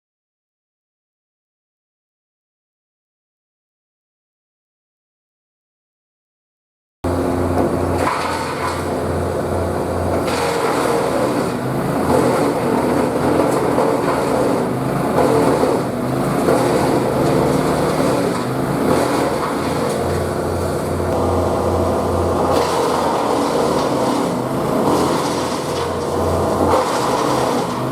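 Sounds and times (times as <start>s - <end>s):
wood chipper running: 7.0s - 27.9s.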